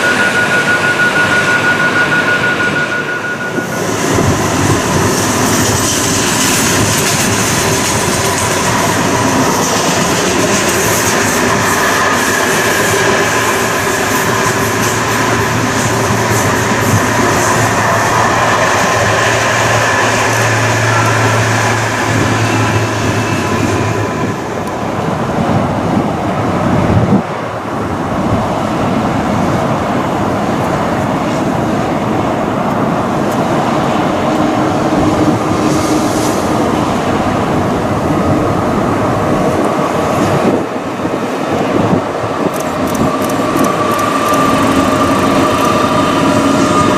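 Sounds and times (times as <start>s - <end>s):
thin whining tones: 0.0s - 24.8s
freight train rumbling on rails: 0.0s - 46.9s.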